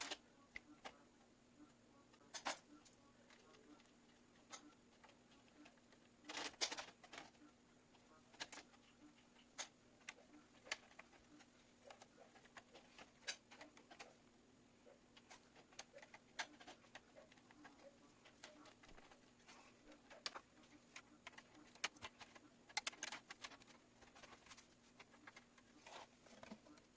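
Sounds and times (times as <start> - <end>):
steady low hum: 0.0 - 26.9
clicks and taps of computer parts: 20.2 - 25.4.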